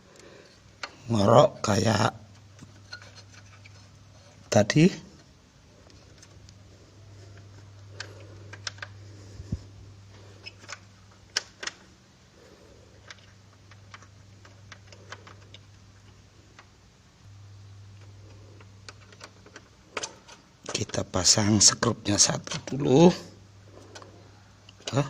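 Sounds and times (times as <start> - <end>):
low steady hum: 0.0 - 25.0
plastic parts clicking: 7.3 - 9.0, 10.4 - 12.0, 12.9 - 16.8, 17.9 - 21.1, 23.8 - 25.0.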